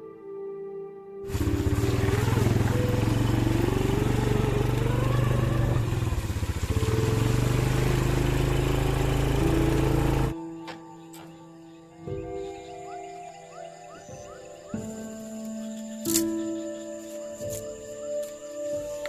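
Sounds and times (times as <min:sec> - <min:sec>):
vehicle engine running: 0:01.3 - 0:10.4.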